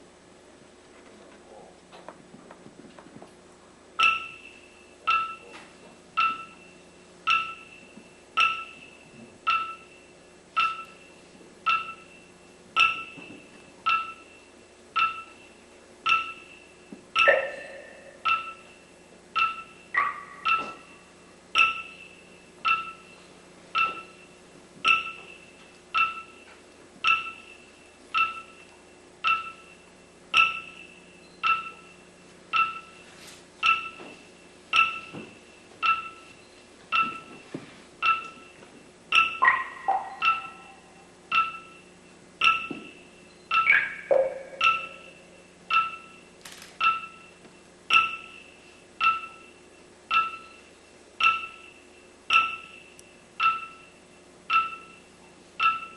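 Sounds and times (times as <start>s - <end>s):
high struck percussive note: 17.2s - 18.5s.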